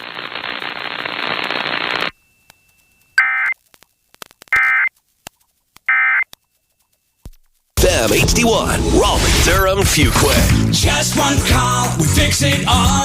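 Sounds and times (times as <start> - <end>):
steady hiss: 0.0 - 3.8
digital data tone bursts: 3.2 - 3.6.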